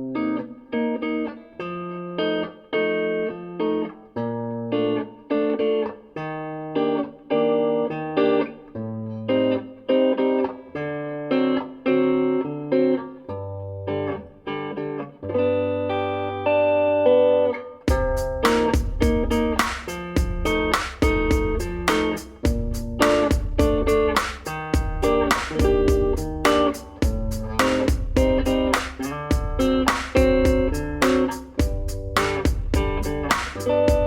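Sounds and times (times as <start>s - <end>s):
guitar chords picked: 0.0s - 34.0s
bass line: 17.9s - 19.5s, 24.8s - 34.0s.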